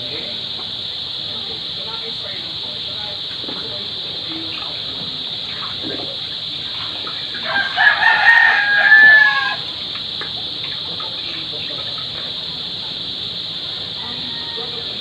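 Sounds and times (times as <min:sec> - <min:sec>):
rooster crowing: 0:07.3 - 0:09.9, 0:13.7 - 0:15.0.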